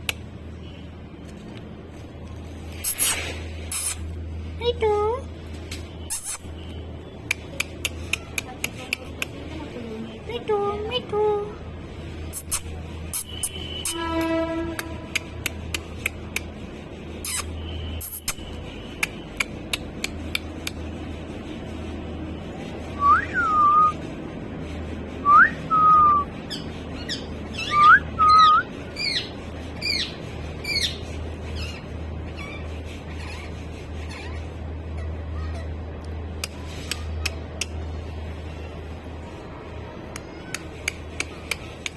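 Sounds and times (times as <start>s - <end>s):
sharp clicks: 7.2s - 9.4s, 40.1s - 41.9s
parrot whistling and chirping: 25.3s - 31.0s.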